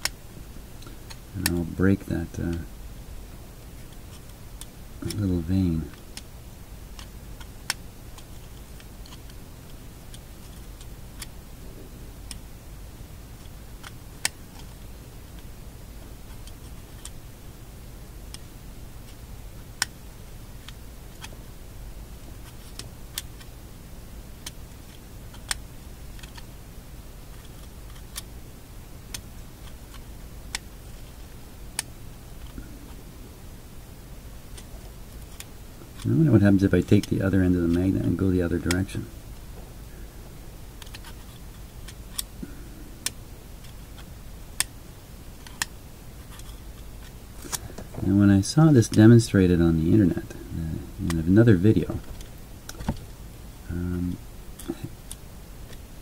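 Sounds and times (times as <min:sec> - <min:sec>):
steady low hum: 0:00.0 - 0:56.0
magnet tapping clicks: 0:07.0 - 0:11.4, 0:19.8 - 0:20.0, 0:22.4 - 0:23.5, 0:24.4 - 0:25.6, 0:26.2 - 0:26.5, 0:29.1 - 0:33.0, 0:40.8 - 0:44.8, 0:45.4 - 0:48.0, 0:52.0 - 0:53.1.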